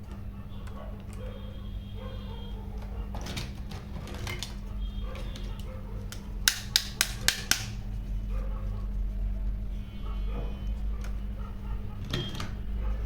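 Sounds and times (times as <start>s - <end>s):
steady low hum: 4.6s - 13.0s
clicks and taps: 5.5s - 7.8s
sharp clicks: 6.1s - 7.8s.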